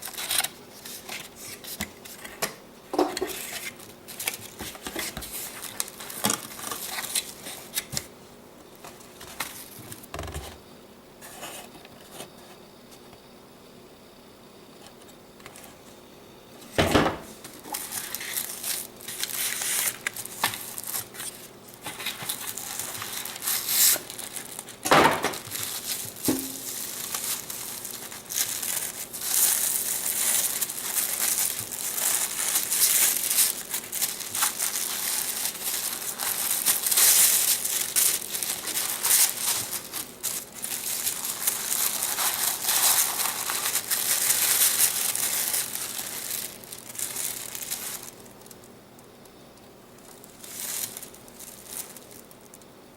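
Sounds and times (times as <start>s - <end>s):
packaging rustling and crackling: 0.0s - 2.3s, 3.2s - 8.1s, 17.3s - 48.7s, 50.0s - 52.6s.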